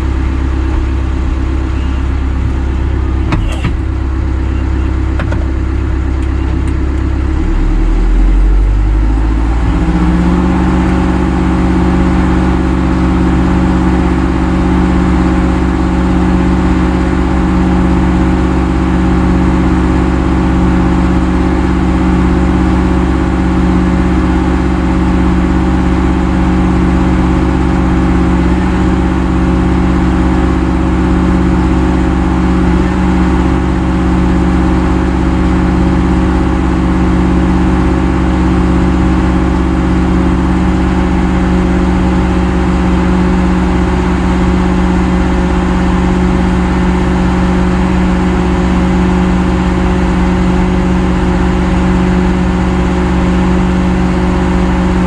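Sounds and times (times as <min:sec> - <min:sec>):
vehicle engine speeding up: 0:06.6 - 0:14.3.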